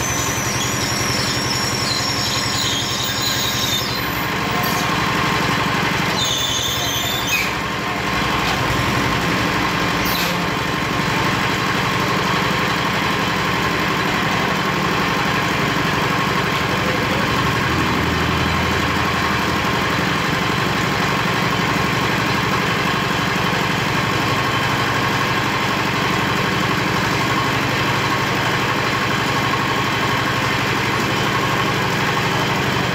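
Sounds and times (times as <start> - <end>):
high squeal: 0.0 - 5.0, 6.0 - 7.8, 10.0 - 10.6
hoist engine running: 0.0 - 32.9.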